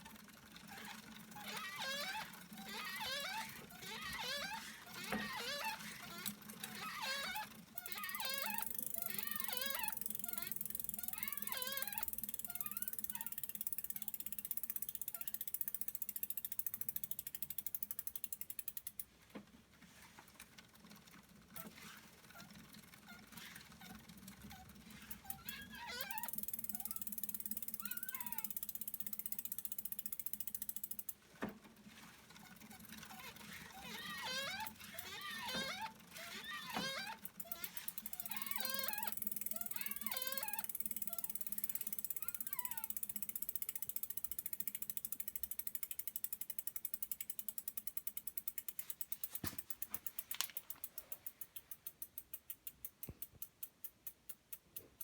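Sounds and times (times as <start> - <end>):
high-pitched mechanical squeak: 0.7 - 14.2, 21.6 - 28.6, 32.4 - 43.0.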